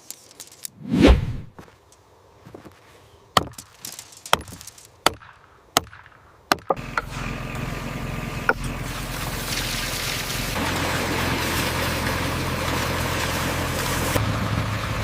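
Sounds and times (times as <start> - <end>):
axe chopping wood: 3.4 - 3.7, 4.3 - 7.1
engine-like drone: 6.8 - 15.0.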